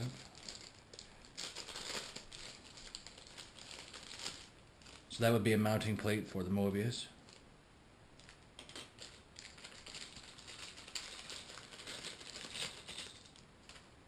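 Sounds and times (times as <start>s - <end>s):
plastic bag rustling: 0.0s - 5.5s, 8.2s - 13.9s.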